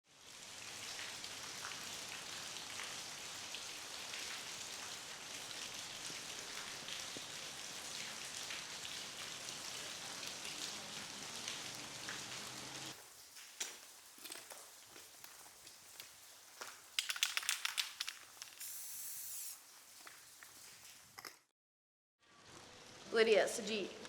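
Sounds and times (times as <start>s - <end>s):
steady rain falling: 0.1s - 18.6s.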